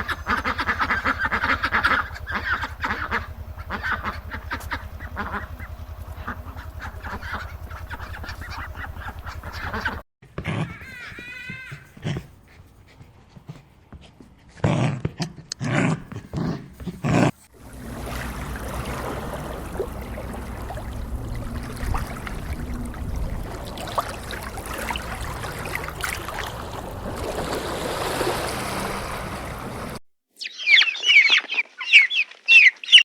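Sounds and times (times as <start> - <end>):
low rumble: 0.0 - 10.0, 17.5 - 30.0
flowing water rushing: 17.5 - 30.0.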